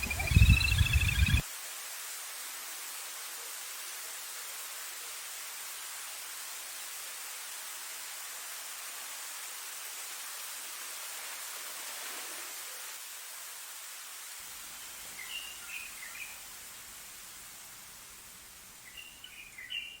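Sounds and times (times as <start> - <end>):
bird chirping: 0.0 - 1.4, 18.8 - 20.0
rain falling: 0.0 - 20.0.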